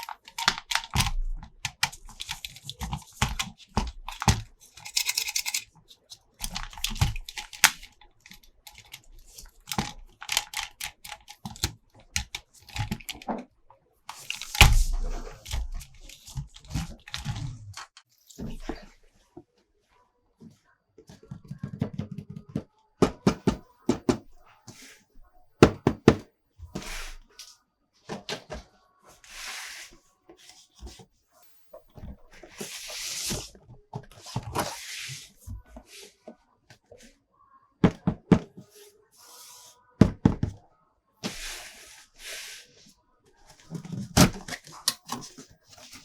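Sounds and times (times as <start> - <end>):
plastic clicks and knocks: 21.2 - 24.4, 25.6 - 26.2.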